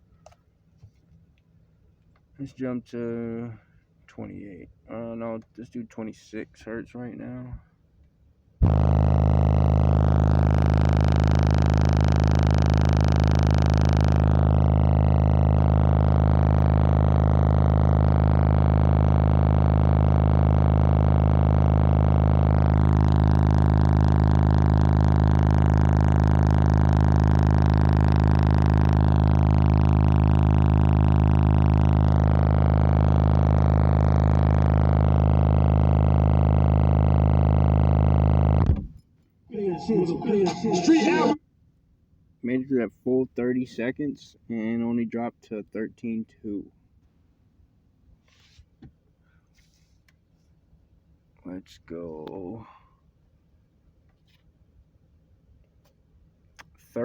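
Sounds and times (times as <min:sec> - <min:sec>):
deep bass drone with buzzing: 0:08.6 - 0:39.0, 0:39.6 - 0:41.4.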